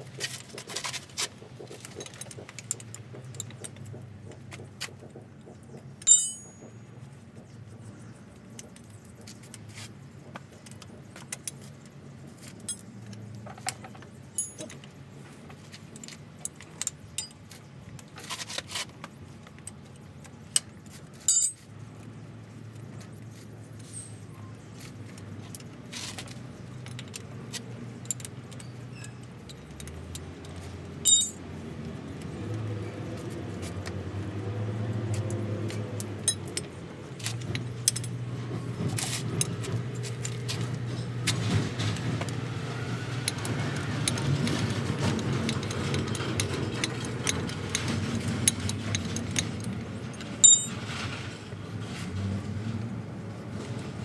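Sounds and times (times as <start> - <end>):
metallic clinks and taps: 6.0 - 6.8, 14.4 - 14.9, 21.3 - 21.6, 31.1 - 31.4, 50.4 - 50.8.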